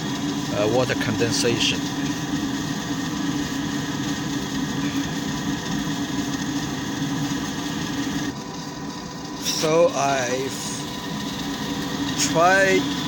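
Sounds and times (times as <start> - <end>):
furnace fan whirring: 0.0 - 13.0.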